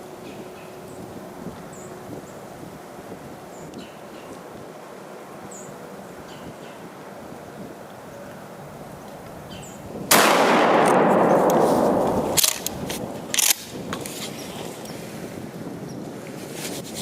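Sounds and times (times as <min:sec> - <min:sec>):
loud gunshot: 0:10.1 - 0:13.7
sharp metallic clicks: 0:10.2 - 0:14.1.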